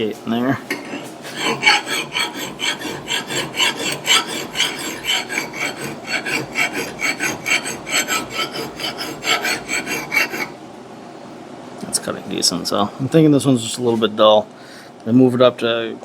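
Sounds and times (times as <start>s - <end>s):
hand file scraping steel: 0.7s - 10.6s.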